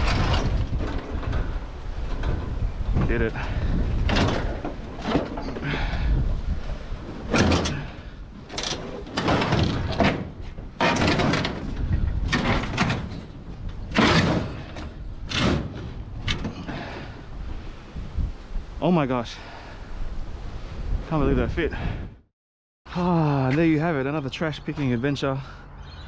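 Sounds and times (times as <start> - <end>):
scrap metal clunking and scraping: 0.0 - 6.0, 6.7 - 17.2.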